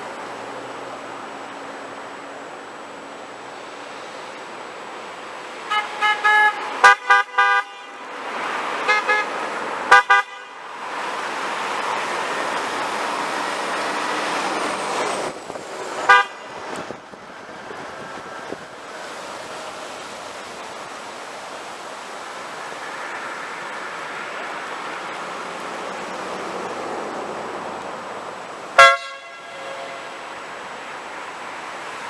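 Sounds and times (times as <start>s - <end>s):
passing traffic: 0.0s - 32.0s
car horns honking: 5.6s - 8.2s, 8.8s - 10.7s, 16.0s - 16.6s, 28.8s - 30.4s.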